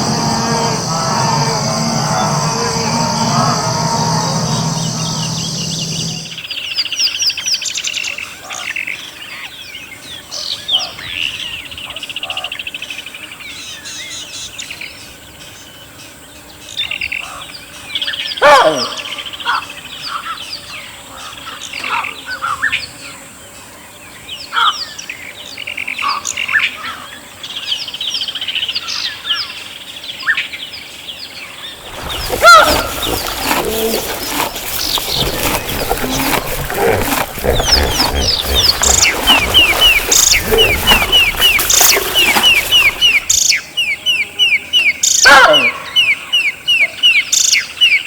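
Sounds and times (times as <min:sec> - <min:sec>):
birds chirping and whistling: 0:31.8 - 0:43.3.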